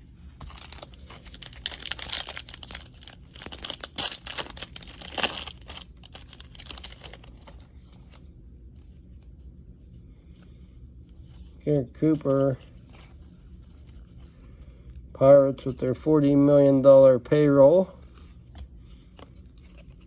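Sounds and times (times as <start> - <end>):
foil wrapper tearing and crinkling: 0.4 - 7.7.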